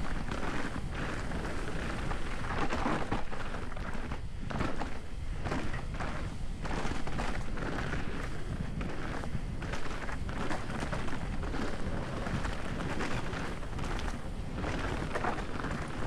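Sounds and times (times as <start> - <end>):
mountain bike rattling on trail: 0.0 - 16.0
wind buffeting microphone: 0.0 - 16.0.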